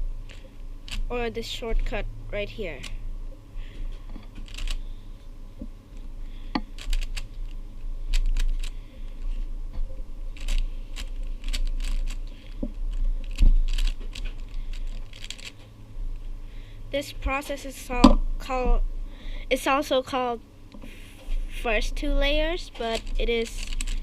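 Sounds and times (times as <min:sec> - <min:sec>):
speed cube clicking: 0:04.4 - 0:04.8, 0:06.6 - 0:08.7, 0:10.4 - 0:12.2, 0:12.9 - 0:15.6, 0:22.8 - 0:24.0.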